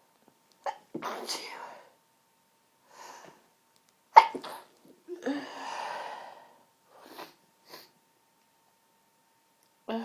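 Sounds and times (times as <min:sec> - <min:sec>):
breathy exhale: 0:05.2 - 0:07.9
sniffs: 0:07.0 - 0:08.0.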